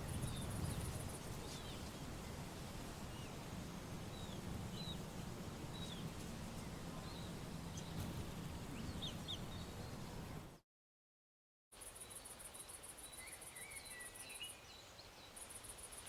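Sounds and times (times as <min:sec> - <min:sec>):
bird chirps: 0:05.7 - 0:10.2, 0:11.9 - 0:15.6.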